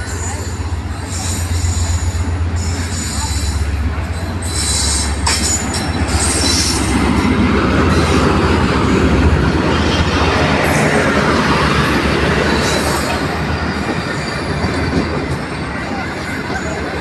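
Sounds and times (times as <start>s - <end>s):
wheel squeal: 0.0s - 7.1s
train rumbling on rails: 0.0s - 17.0s.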